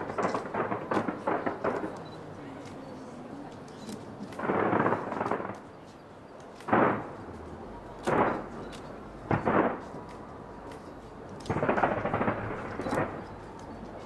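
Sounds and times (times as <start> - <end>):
fireworks crackling burst: 0.0 - 2.3, 4.3 - 5.8, 6.6 - 8.6, 9.2 - 10.2, 10.8 - 13.5
fireworks bangs: 0.0 - 2.7, 4.2 - 5.9, 6.5 - 14.0.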